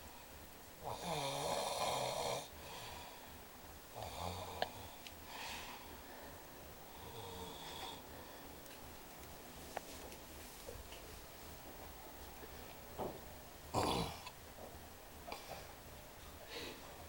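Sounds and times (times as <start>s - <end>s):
man snoring: 0.8s - 3.0s, 4.0s - 5.0s, 6.9s - 8.1s, 13.7s - 14.3s.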